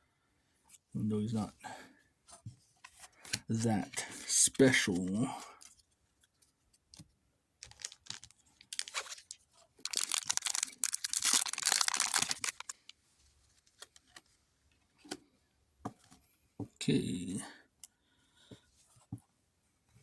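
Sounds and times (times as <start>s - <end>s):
cards and packaging clicking: 7.6s - 13.0s
plastic crinkling and rustling: 7.6s - 14.3s.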